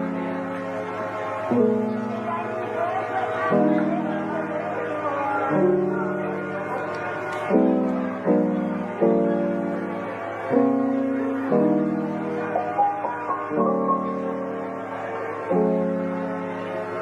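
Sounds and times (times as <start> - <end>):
soft piano instrumental: 0.0 - 17.0.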